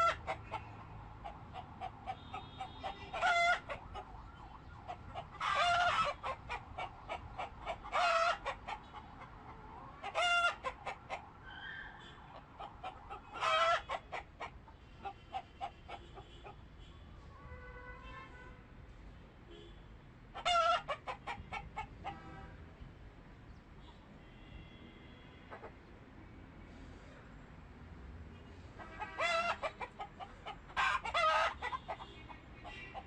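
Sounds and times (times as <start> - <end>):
chicken squawks: 0.0 - 3.8, 5.2 - 9.2, 10.0 - 11.7, 12.3 - 16.6, 20.4 - 22.2, 25.5 - 25.7, 28.8 - 33.0
chickens clucking: 0.0 - 11.3, 12.3 - 16.6, 20.4 - 22.2, 25.5 - 25.7, 28.8 - 33.0.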